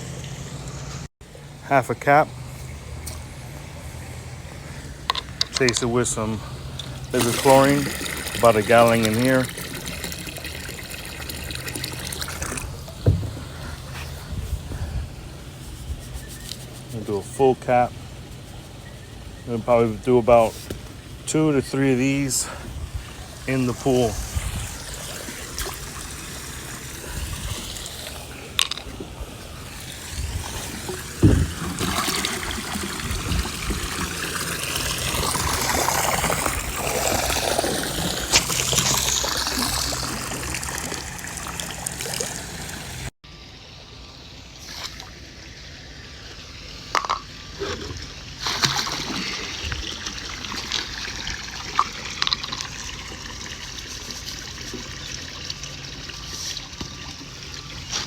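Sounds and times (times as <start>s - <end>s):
liquid pouring into pool water: 5.6s - 14.2s, 22.0s - 43.1s, 47.8s - 58.0s
short knocks: 13.0s - 13.6s.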